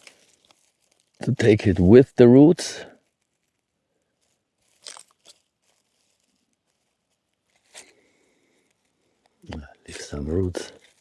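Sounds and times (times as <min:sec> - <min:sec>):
plant crunching and tearing from soil: 0:00.0 - 0:01.3, 0:04.2 - 0:08.0.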